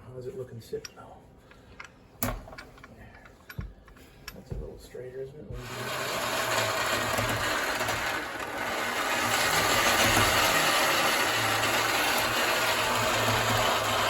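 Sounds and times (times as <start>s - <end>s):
machine humming and rushing: 5.6s - 14.0s.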